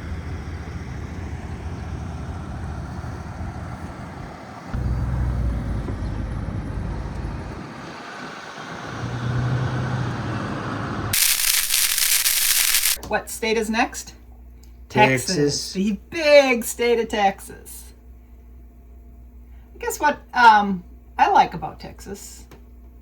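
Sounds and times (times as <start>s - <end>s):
loud rushing hiss: 11.2s - 13.0s.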